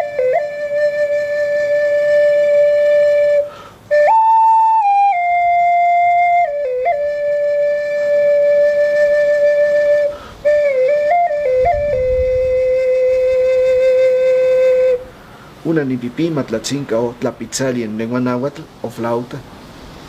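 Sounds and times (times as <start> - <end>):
flute playing long notes: 0.0 - 15.1.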